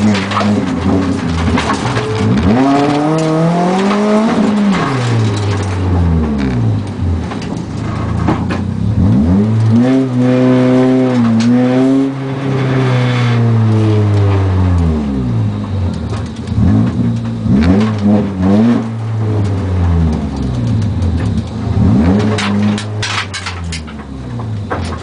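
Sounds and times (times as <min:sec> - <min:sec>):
car engine revving: 0:00.0 - 0:25.0.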